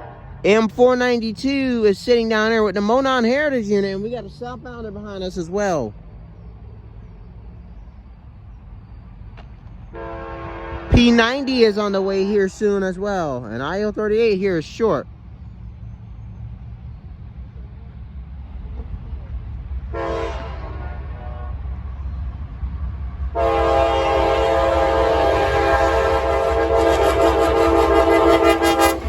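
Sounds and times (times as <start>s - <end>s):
locomotive air horn blasts: 0.0s - 0.6s, 9.9s - 12.3s, 19.9s - 21.8s, 23.3s - 29.0s
locomotive engine rumble: 0.0s - 29.0s.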